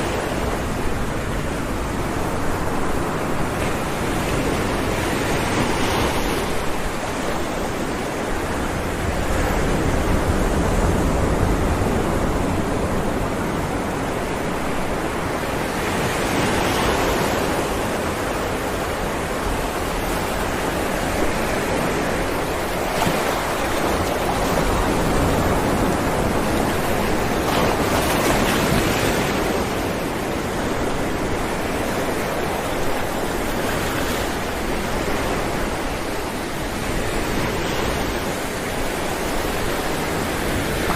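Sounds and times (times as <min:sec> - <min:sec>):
surf breaking on rocks: 0:20.4 - 0:30.4.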